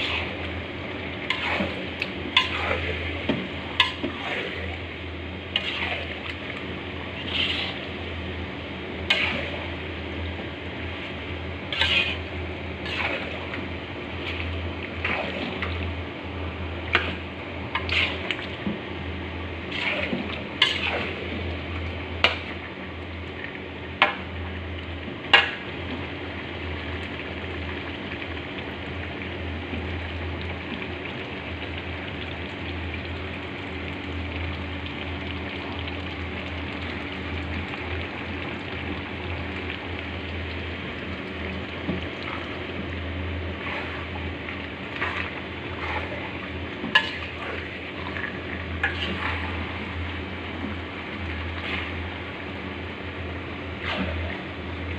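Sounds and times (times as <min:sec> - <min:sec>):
food sizzling in a pan: 0:01.2 - 0:03.2.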